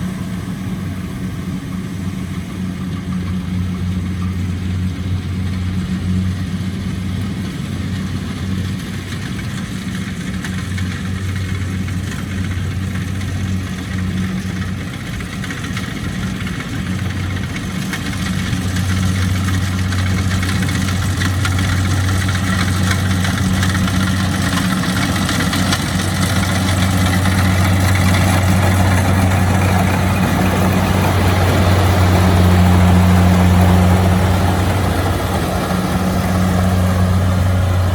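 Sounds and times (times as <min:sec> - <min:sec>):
combine harvester engine running: 0:00.0 - 0:37.9.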